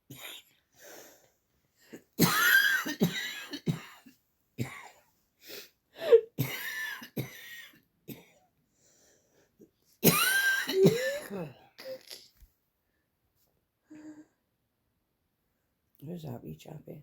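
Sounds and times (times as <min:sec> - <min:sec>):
person coughing: 0:01.9 - 0:05.0, 0:10.0 - 0:12.3.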